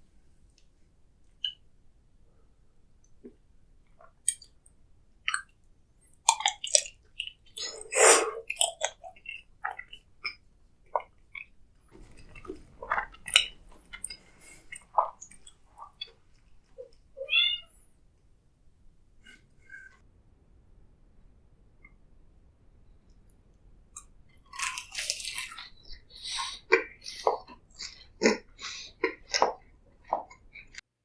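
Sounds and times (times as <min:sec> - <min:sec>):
eating crunches and bites: 0:06.3 - 0:16.2, 0:24.4 - 0:30.7.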